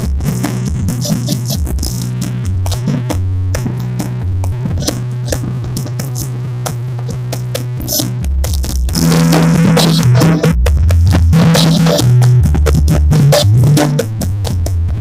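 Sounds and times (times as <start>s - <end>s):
electronic dance music: 0.0s - 15.0s
heavy sustained bass notes: 0.0s - 15.0s.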